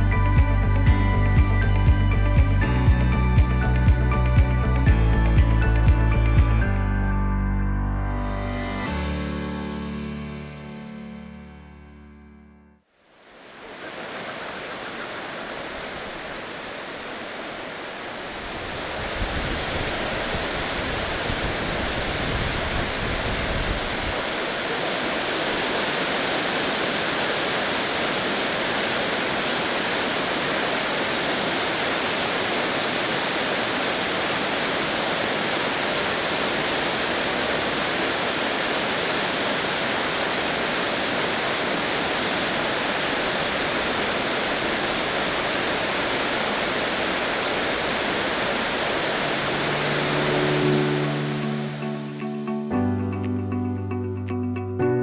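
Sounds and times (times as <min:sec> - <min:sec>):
waterfall rushing: 0:13.1 - 0:52.6.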